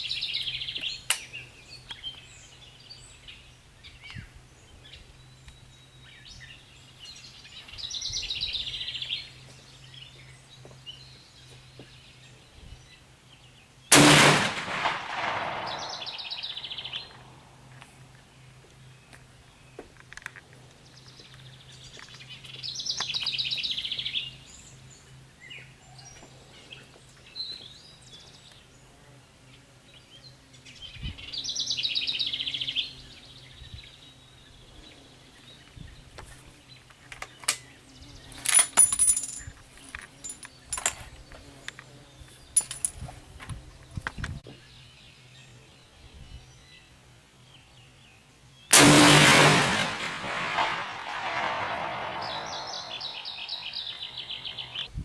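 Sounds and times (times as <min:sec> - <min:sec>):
loud rifle shot: 0:13.9 - 0:17.2, 0:48.7 - 0:53.6
bird trills: 0:52.1 - 0:54.9.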